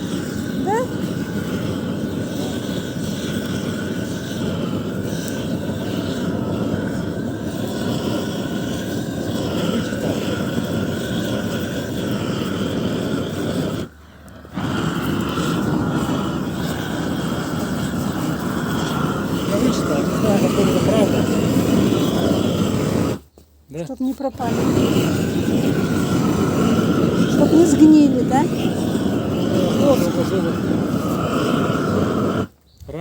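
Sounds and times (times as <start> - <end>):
blowtorch flame burning: 0.0 - 33.0.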